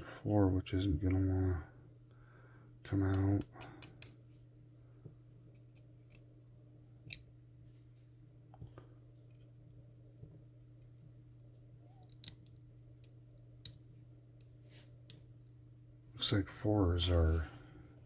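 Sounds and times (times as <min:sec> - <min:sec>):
steady low hum: 0:00.0 - 0:18.0
metallic clicks of small tools: 0:12.0 - 0:13.8.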